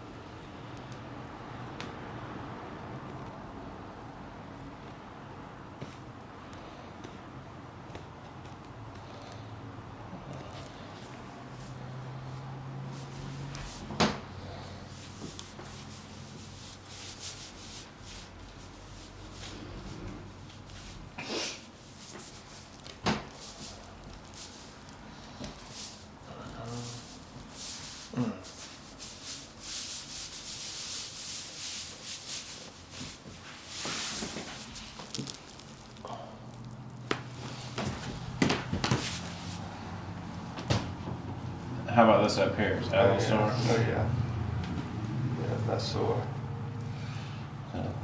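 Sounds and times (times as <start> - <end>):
hands rubbing on skin and clothing: 11.0 - 13.9, 14.6 - 36.0, 37.1 - 39.8.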